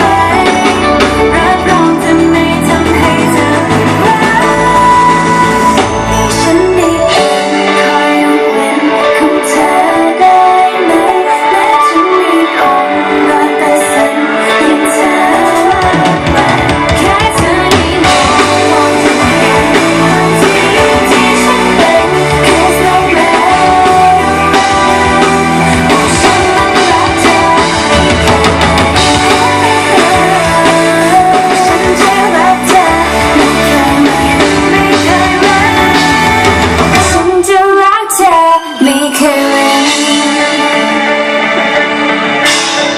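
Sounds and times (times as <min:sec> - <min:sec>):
live pop-rock band: 0:00.0 - 0:42.9
person singing: 0:00.0 - 0:42.9.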